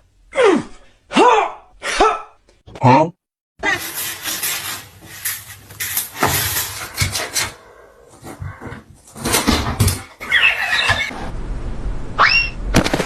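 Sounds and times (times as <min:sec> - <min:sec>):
animal huffing and scuffling: 0:03.6 - 0:11.1
high chirping squeaks: 0:10.2 - 0:11.1.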